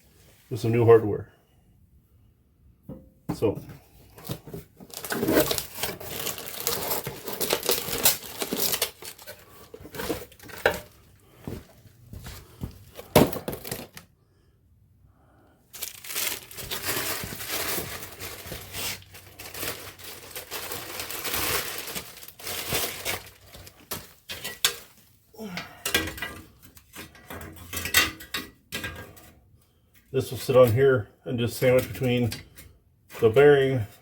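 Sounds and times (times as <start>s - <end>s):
packaging rustling and crinkling: 4.1s - 14.0s, 15.7s - 25.2s.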